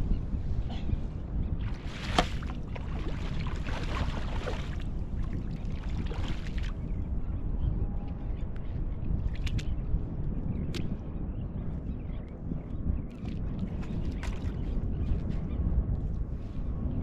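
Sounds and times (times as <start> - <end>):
wind rumble on microphone: 0.0 - 17.0
surf: 1.6 - 4.9.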